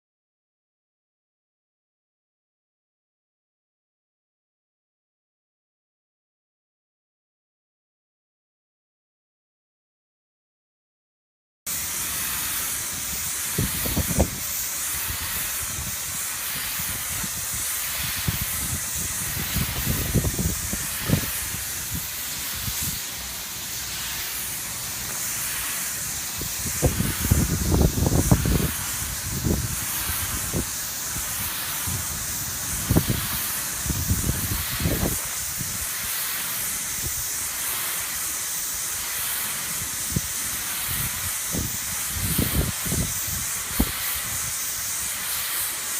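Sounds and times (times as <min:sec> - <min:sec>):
spray gun hissing: 0:11.7 - 0:45.9
wind rumble on microphone: 0:13.2 - 0:23.0, 0:26.3 - 0:35.8, 0:40.9 - 0:44.6.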